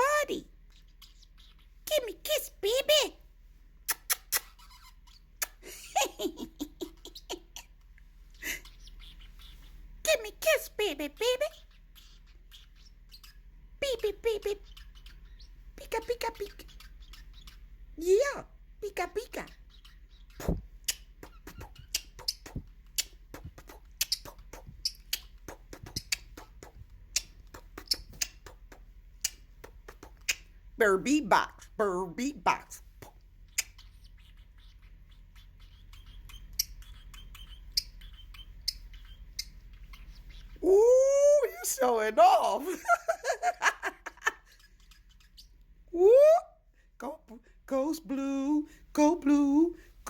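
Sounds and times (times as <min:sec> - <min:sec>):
bird squeaky falling calls: 0:04.4 - 0:05.3, 0:08.4 - 0:09.8, 0:16.4 - 0:17.7, 0:33.4 - 0:40.6
pet bird clicking: 0:19.4 - 0:30.5.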